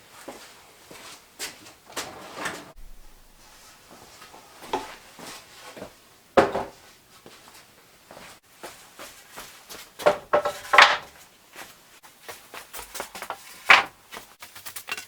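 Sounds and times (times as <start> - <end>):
knocks and scrapes on workbench: 10.0 - 11.1, 13.7 - 13.9.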